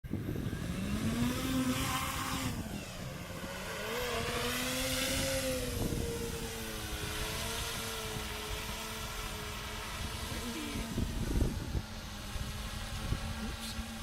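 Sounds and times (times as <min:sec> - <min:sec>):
drone propellers buzzing: 0:00.0 - 0:14.0
rough rushing noise: 0:00.1 - 0:14.0.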